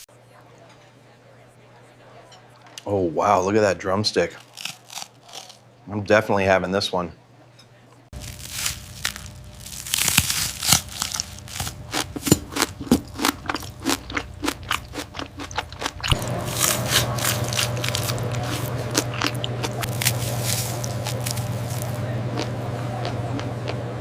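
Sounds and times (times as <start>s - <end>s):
fried chicken crunching: 4.3s - 5.6s, 8.2s - 23.8s
steady hum: 8.2s - 24.0s.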